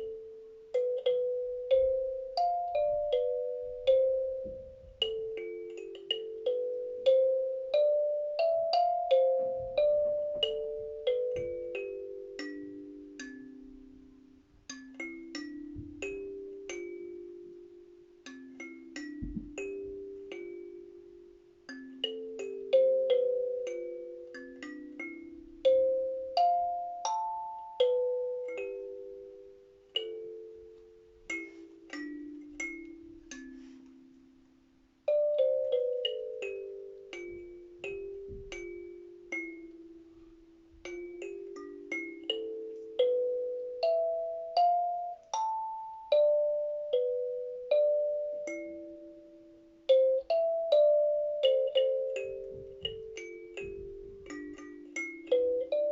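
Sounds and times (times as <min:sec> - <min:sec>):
kalimba plucked notes: 0:00.0 - 0:55.9.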